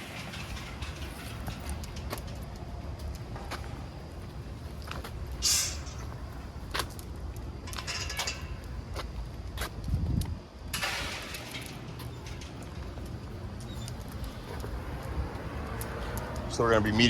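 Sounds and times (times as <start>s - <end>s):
hissy rustles: 0.0s - 7.5s
low traffic rumble: 0.0s - 17.0s.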